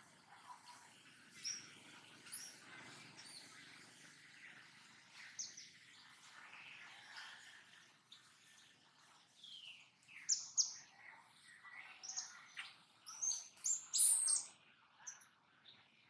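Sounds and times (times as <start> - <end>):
monkey chirping and squeaking: 1.4 - 1.7, 2.3 - 2.6, 13.1 - 14.5.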